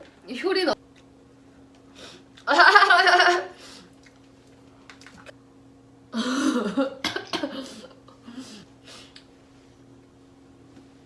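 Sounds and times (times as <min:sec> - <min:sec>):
person coughing: 0:06.1 - 0:08.6.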